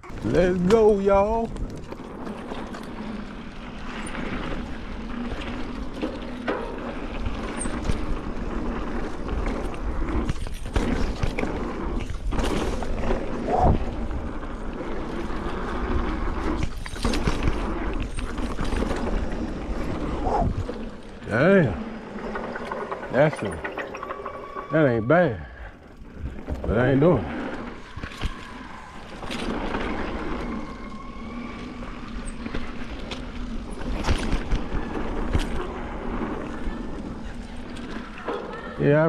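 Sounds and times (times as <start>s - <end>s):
bike tyres rumbling on dirt trail: 0.0s - 39.0s
bike knocking over bumps: 3.9s - 24.0s
wind rush on microphone: 13.4s - 14.5s, 19.6s - 21.0s.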